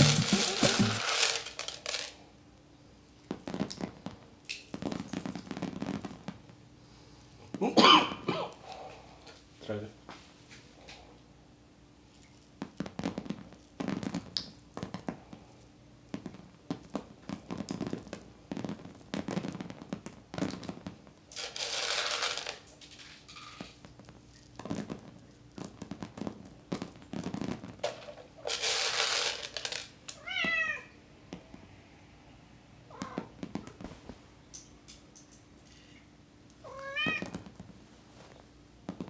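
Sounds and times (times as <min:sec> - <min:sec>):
chickens pecking at kernels: 0:00.0 - 0:01.9
grain showering onto ground: 0:00.0 - 0:02.2, 0:21.3 - 0:23.8.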